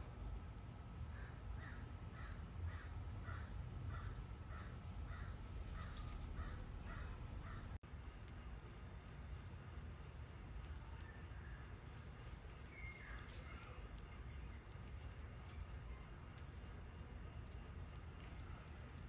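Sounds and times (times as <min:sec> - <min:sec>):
crow cawing: 0:01.1 - 0:07.8.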